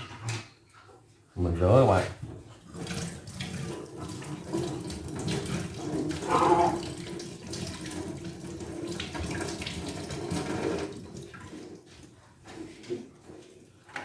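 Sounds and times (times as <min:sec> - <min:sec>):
tap water running into sink: 0:01.6 - 0:14.0
water splashing: 0:02.5 - 0:11.8.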